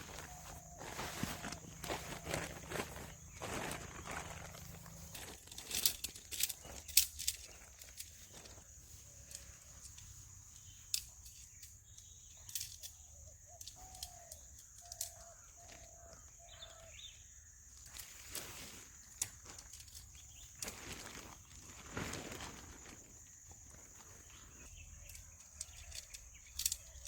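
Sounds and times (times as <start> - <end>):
bird calling: 0.0 - 5.8, 10.6 - 18.2
crackles and rustles: 0.0 - 17.0, 17.7 - 27.0.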